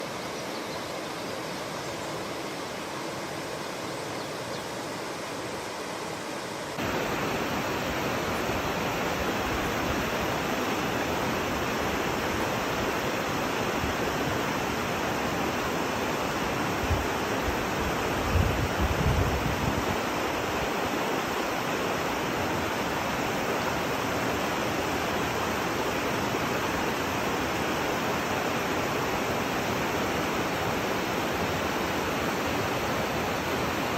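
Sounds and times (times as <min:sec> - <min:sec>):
waterfall and river rushing: 0:00.0 - 0:33.9.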